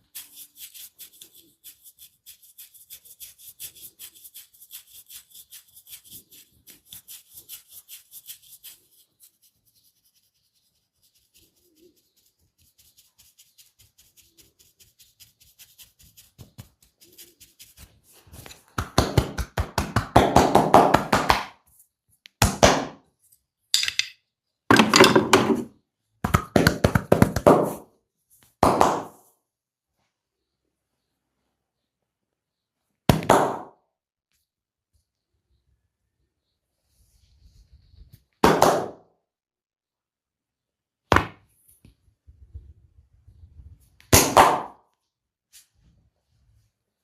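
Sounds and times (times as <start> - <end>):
percussive massage strikes: 18.8 - 21.5, 33.1 - 33.7, 44.1 - 44.8.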